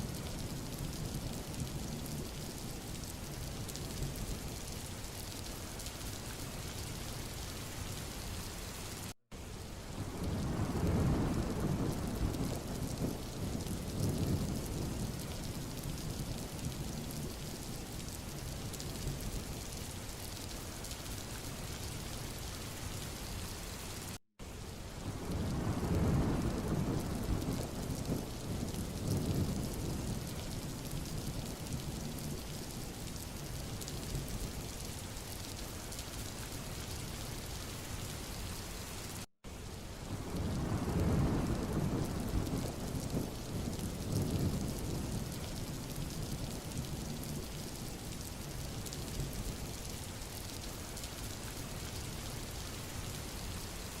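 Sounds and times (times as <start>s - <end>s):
steady rain hiss: 0.0s - 54.0s
low rolling thunder: 10.0s - 17.4s, 25.1s - 32.6s, 40.0s - 47.8s.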